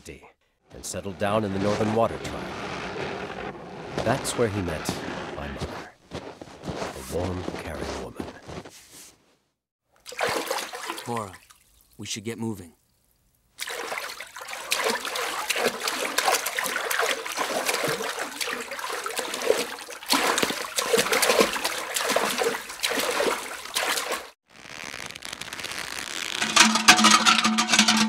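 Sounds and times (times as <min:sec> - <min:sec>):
water splashing and trickling: 0:00.8 - 0:05.5, 0:09.9 - 0:24.4, 0:25.3 - 0:28.0.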